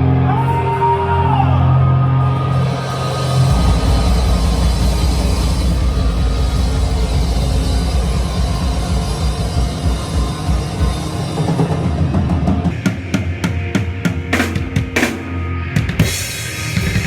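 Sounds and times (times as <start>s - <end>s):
punk rock band playing: 1.9s - 17.0s
held bass note: 2.5s - 12.1s
cymbal crash: 2.5s - 12.2s.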